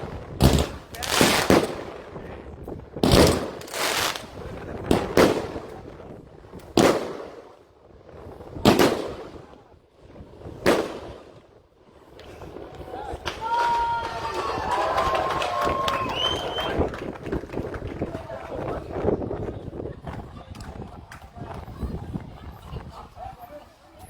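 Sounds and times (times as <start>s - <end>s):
fireworks banging: 0.0s - 14.2s.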